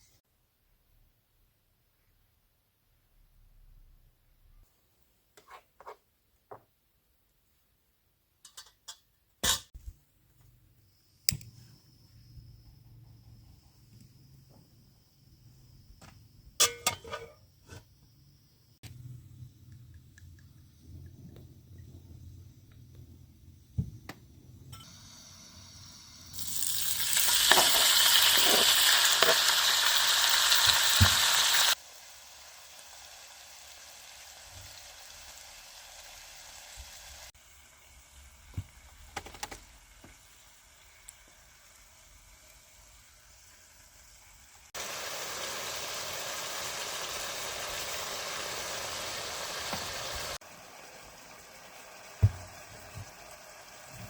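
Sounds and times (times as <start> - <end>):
food sizzling in a pan: 24.7 - 54.0.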